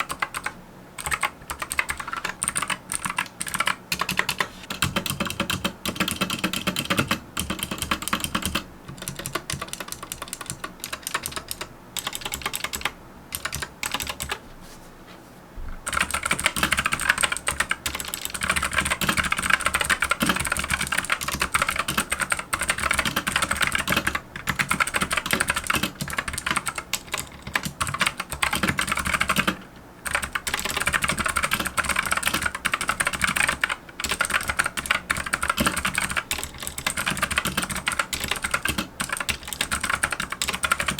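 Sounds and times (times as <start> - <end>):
fast mechanical keyboard typing: 0.0 - 14.4, 15.8 - 40.9.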